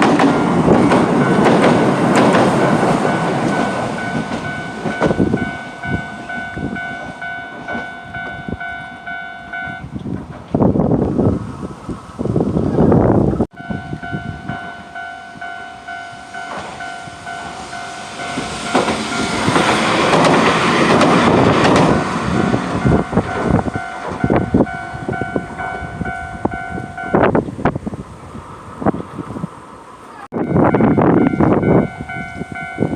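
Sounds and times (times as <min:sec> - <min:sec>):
wheels knocking over rail joints: 0:00.0 - 0:05.5
crossing warning bell ringing: 0:00.0 - 0:10.1, 0:13.5 - 0:27.5, 0:30.3 - 0:32.9
tram rumble: 0:00.0 - 0:32.9.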